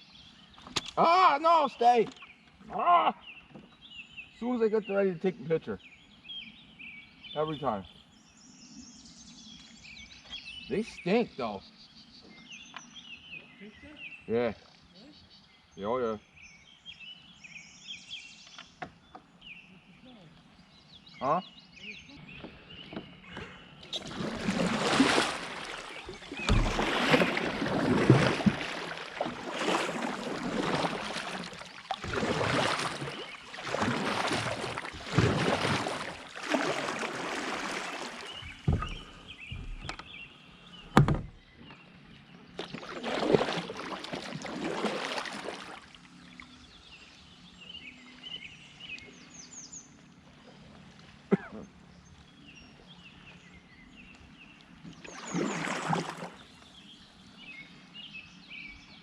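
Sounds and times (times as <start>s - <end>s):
paddle strokes splashing in water: 23.8s - 41.4s, 42.5s - 46.5s, 54.8s - 56.8s.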